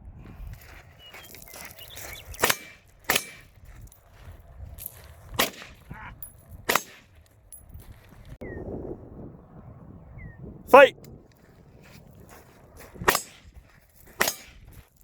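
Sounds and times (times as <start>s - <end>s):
rifle shots: 2.4s - 3.4s, 5.4s - 5.9s, 6.7s - 7.1s.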